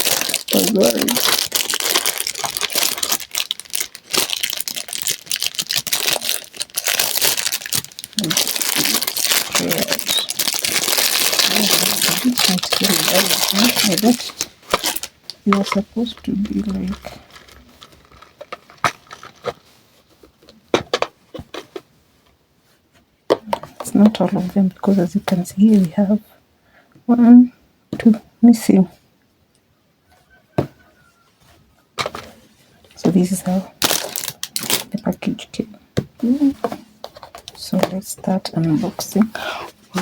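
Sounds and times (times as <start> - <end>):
small items clicking and crackling: 0.0 - 19.6, 33.8 - 35.0
packaging wrap crinkling: 0.0 - 20.6, 33.8 - 35.0.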